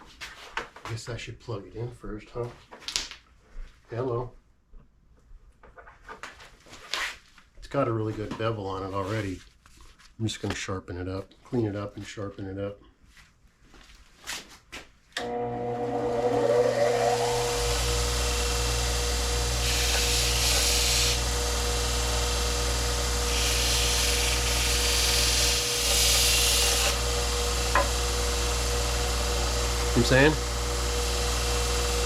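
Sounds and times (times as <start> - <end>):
belt grinder motor running: 15.2 - 32.0
steel grinding on belt: 15.8 - 32.0.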